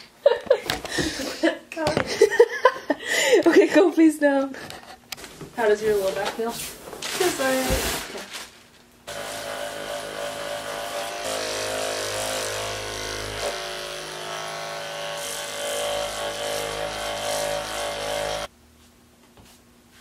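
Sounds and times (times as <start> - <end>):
small electric motor humming: 9.1 - 18.5.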